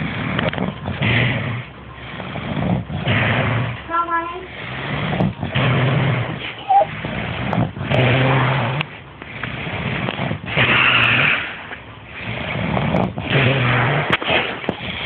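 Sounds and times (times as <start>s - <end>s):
quiet breathing: 0.0s - 5.5s
man snoring loudly: 4.5s - 8.8s.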